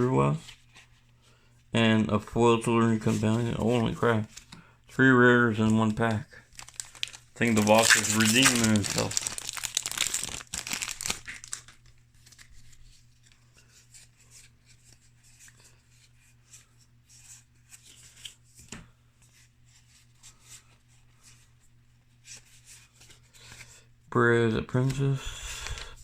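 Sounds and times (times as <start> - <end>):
cards flicking and rustling: 5.6 - 18.9, 24.8 - 26.0.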